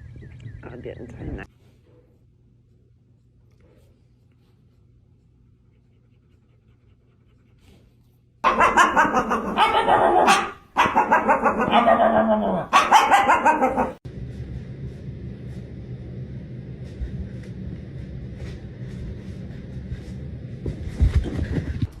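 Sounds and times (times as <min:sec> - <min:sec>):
dog barking loudly: 0:08.4 - 0:14.0.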